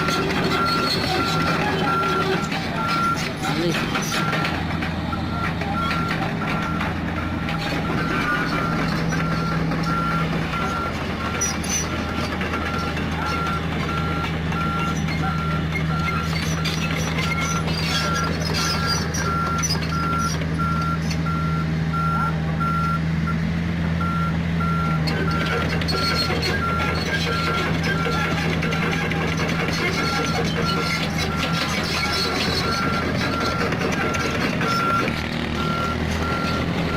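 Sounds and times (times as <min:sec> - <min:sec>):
diesel engine running: 0:00.0 - 0:36.9
travel alarm beeping: 0:19.3 - 0:23.4, 0:32.7 - 0:36.9.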